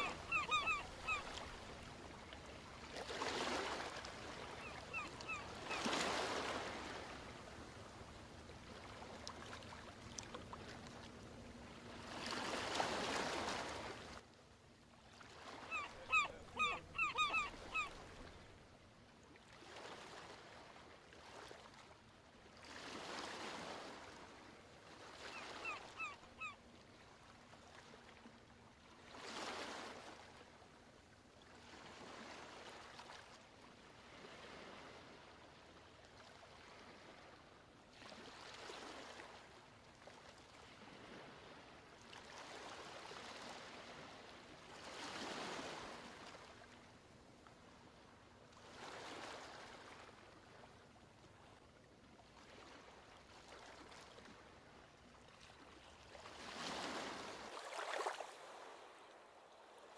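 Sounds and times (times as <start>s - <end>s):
bird calling sharply: 0.0s - 1.4s, 4.6s - 5.9s, 15.6s - 18.0s
ocean waves washing ashore: 0.0s - 14.2s, 56.3s - 59.9s.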